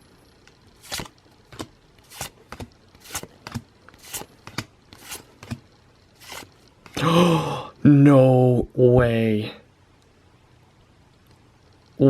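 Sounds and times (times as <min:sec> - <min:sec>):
trading cards swishing: 0:00.8 - 0:05.6, 0:06.2 - 0:07.0.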